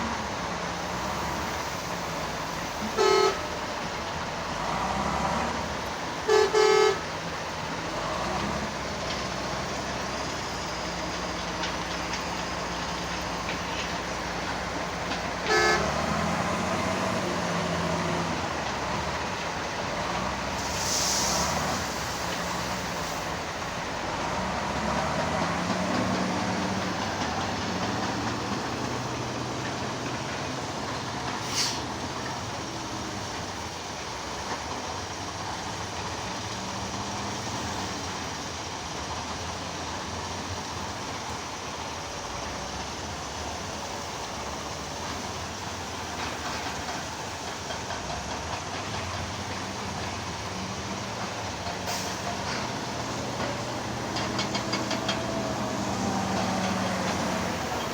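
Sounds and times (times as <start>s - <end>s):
heavy diesel engines revving: 0.0s - 57.9s
horn toot: 2.8s - 3.6s, 6.3s - 7.1s, 15.5s - 16.1s
brief hiss: 20.6s - 23.4s, 31.4s - 32.0s.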